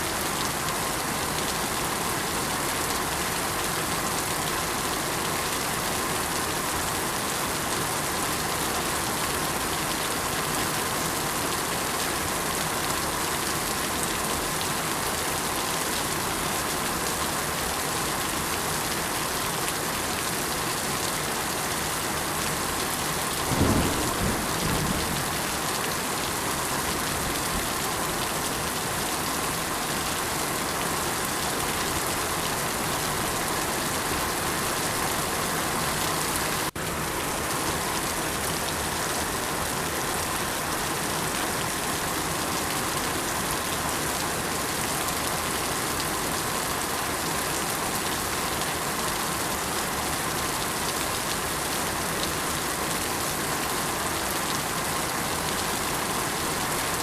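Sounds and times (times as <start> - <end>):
steady rain: 0.0 - 57.0
thunder rumble: 23.5 - 25.5.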